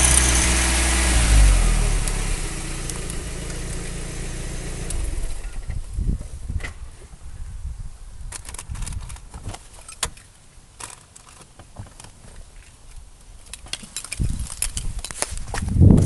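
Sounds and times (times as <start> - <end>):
car engine rumbling: 0.0 - 7.0.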